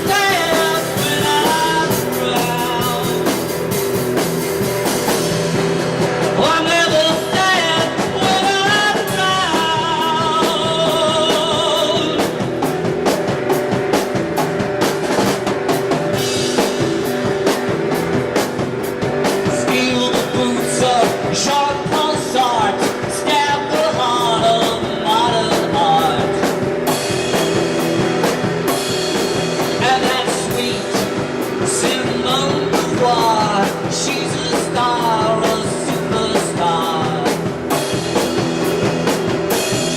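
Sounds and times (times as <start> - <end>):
person singing: 0.0 - 3.7, 6.2 - 12.7, 19.4 - 26.8, 29.6 - 37.9
drum kit beat: 0.0 - 39.9
rock band playing: 0.0 - 39.9.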